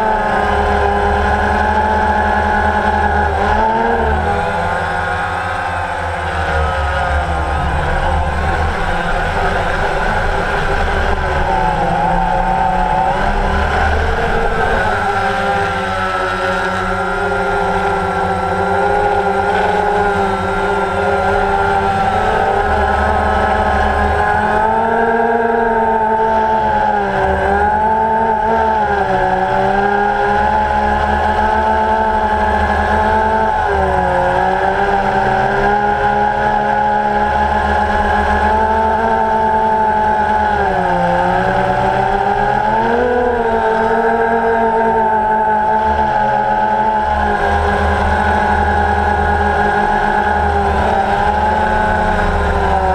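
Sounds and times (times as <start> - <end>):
drone propellers whining: 0.0 - 52.9.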